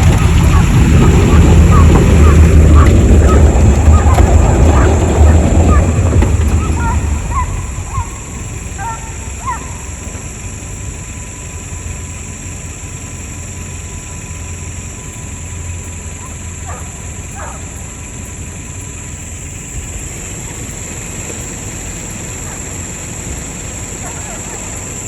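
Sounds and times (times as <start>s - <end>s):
deer hounds bawling in distance: 0.0s - 10.5s, 16.1s - 18.2s, 21.4s - 25.0s
steady low rumble: 0.0s - 25.0s.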